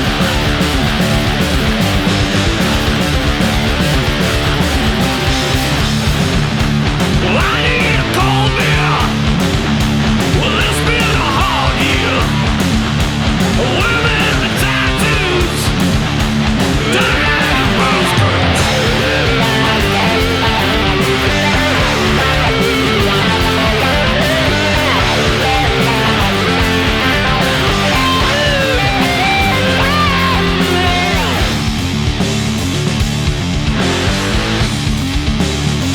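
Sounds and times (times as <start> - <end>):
heavy rock band playing: 0.0 - 35.9
lead guitar bending notes: 17.2 - 32.2.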